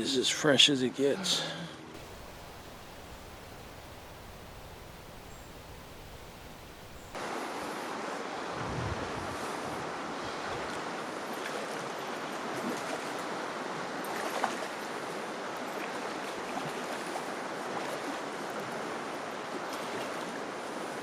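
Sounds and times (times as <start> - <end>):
river rushing: 2.0 - 21.0.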